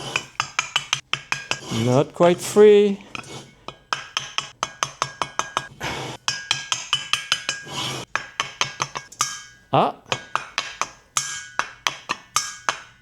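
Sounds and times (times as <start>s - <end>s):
metal scraping rasp: 0.0s - 13.0s
metallic valve clicks and clinks: 3.1s - 13.0s.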